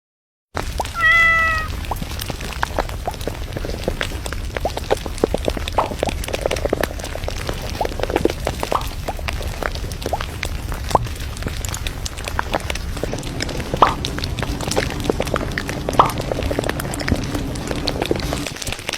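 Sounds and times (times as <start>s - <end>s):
quick clicks and pops: 0.6s - 14.1s
cat meowing: 0.9s - 1.8s
low steady hum: 1.0s - 18.6s.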